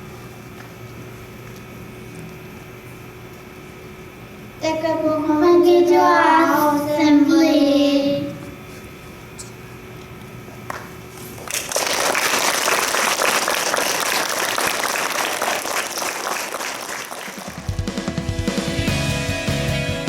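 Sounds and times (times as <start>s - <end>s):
audience clapping: 10.7s - 18.2s
music with guitar and drums: 17.6s - 20.0s.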